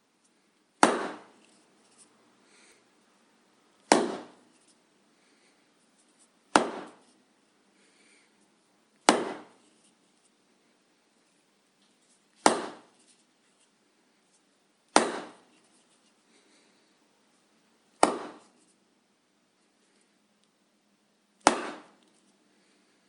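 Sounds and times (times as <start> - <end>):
rubber hammer striking wood: 0.8 - 1.3, 3.8 - 4.4, 6.5 - 7.0, 9.0 - 9.6, 12.4 - 12.9, 14.9 - 15.5, 18.0 - 18.5, 21.4 - 22.0.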